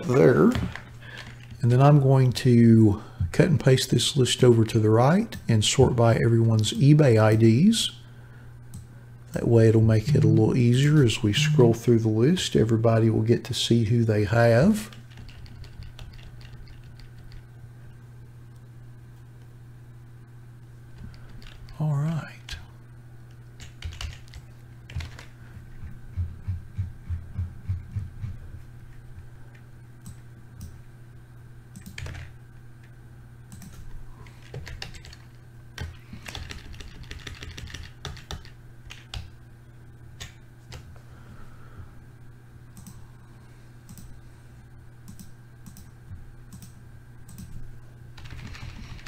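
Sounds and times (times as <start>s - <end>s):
steady low hum: 0.0s - 49.0s
typing on computer keyboard: 14.9s - 17.4s, 23.6s - 25.3s, 31.8s - 32.3s, 34.4s - 39.3s, 48.2s - 49.0s.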